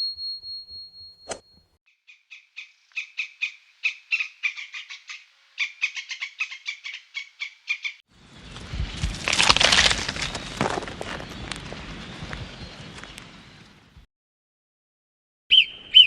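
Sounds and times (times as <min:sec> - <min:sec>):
animal chirping calls: 0:02.1 - 0:08.0.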